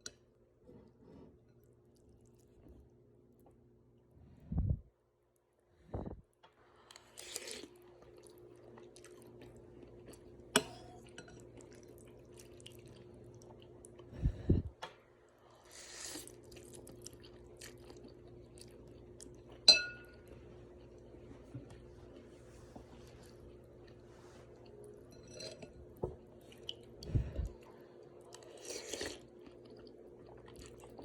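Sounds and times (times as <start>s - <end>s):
chewing and eating: 0.8s - 3.6s, 6.8s - 14.3s, 15.2s - 31.0s
steady low hum: 12.1s - 15.5s, 16.8s - 28.4s.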